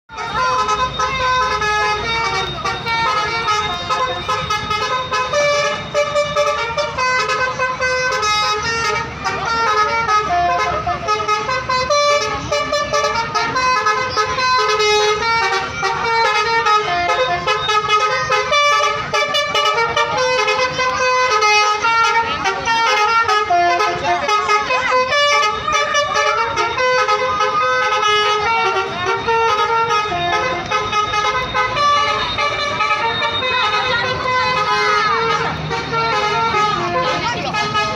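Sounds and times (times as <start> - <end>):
multi-tone air horn melody: 0.1 - 37.9.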